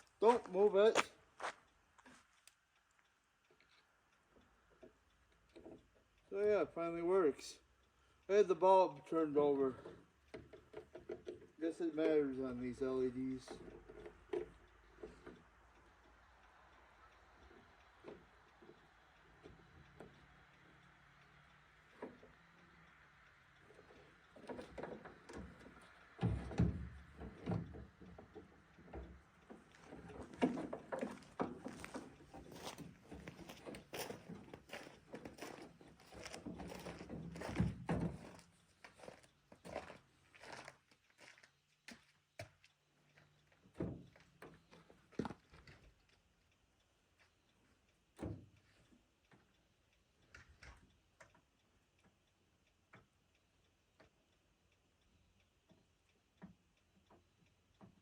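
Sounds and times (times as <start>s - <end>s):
faint clicks and light knocks: 0.0s - 6.4s, 9.0s - 58.0s.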